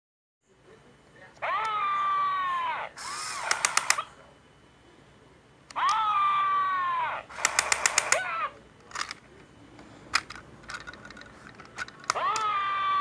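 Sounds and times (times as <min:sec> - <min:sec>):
sharp clicks: 0:03.0 - 0:04.1, 0:07.3 - 0:08.3.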